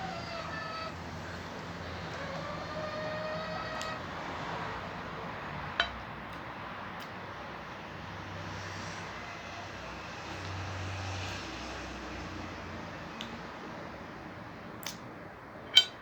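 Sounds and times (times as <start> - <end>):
cutlery clinking on plate: 5.8 - 6.0, 15.7 - 16.0.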